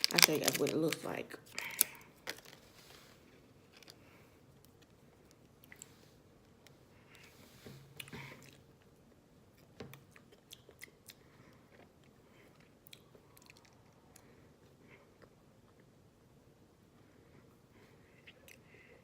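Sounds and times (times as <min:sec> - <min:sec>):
chewing toffee: 0:09.5 - 0:16.0.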